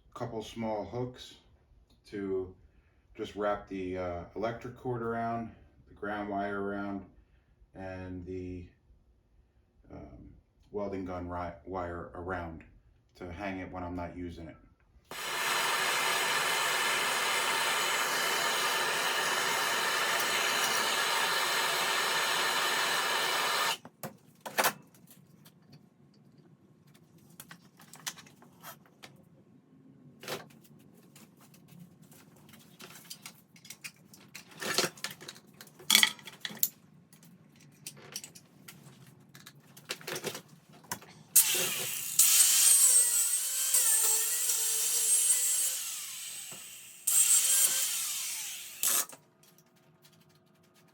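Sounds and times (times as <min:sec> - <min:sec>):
power tool running on metal: 0:15.1 - 0:23.8, 0:41.4 - 0:49.1.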